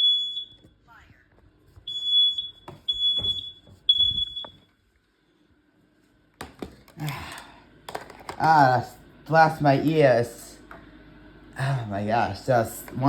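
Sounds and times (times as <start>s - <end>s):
smoke alarm beeping: 0.0s - 0.8s, 1.8s - 4.8s.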